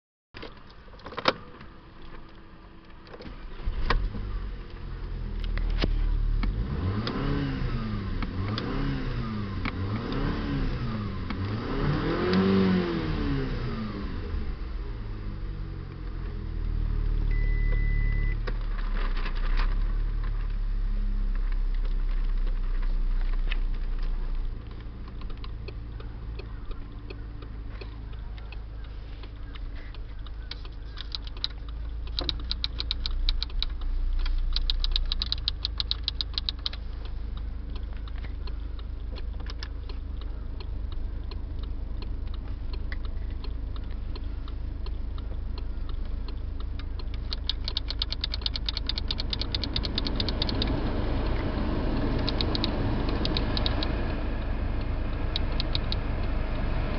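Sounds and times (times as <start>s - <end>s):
car engine idling: 0.4s - 56.9s
short beep: 17.3s - 18.4s
light clicks: 21.4s - 56.4s.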